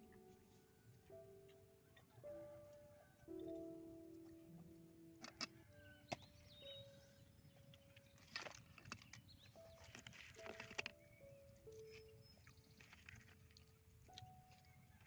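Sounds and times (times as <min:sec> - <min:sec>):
soft instrumental background music: 0:00.0 - 0:15.0.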